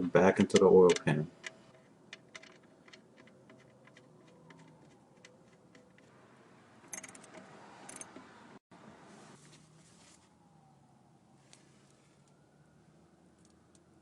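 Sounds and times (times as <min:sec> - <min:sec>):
metallic clinks: 0:06.9 - 0:08.2.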